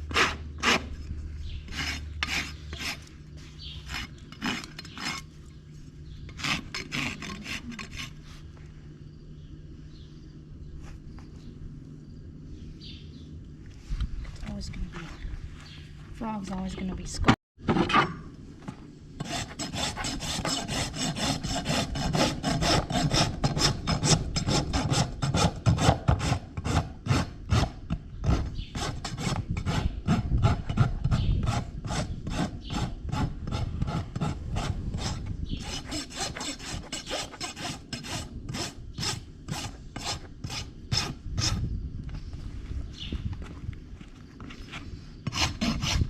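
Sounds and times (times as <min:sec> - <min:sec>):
rasp filing horse hoof: 0:00.0 - 0:05.5, 0:06.2 - 0:08.6, 0:19.2 - 0:41.6, 0:44.4 - 0:46.0.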